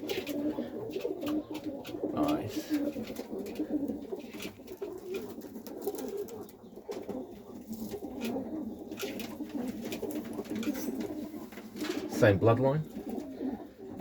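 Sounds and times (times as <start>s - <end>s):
pigeons cooing: 0.0s - 14.0s.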